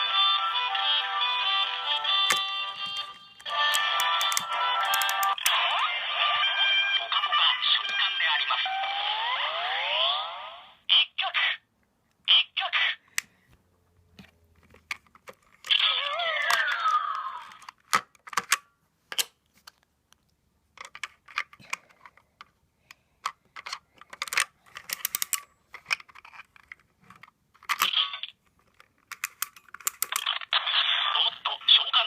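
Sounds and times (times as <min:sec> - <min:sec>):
toy electronic sounds: 0:00.0 - 0:11.6, 0:15.7 - 0:17.8, 0:27.8 - 0:28.4, 0:29.9 - 0:32.0
plastic clicks and rattles: 0:02.3 - 0:05.6, 0:14.2 - 0:30.5.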